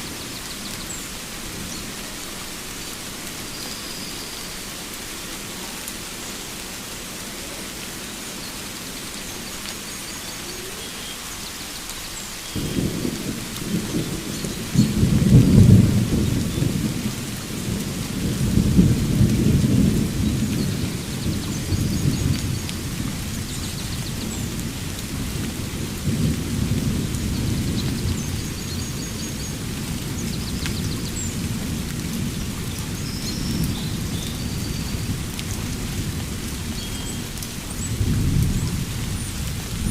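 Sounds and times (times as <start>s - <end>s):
steady rain: 0.0s - 39.9s
rolling thunder rumble: 12.6s - 39.9s.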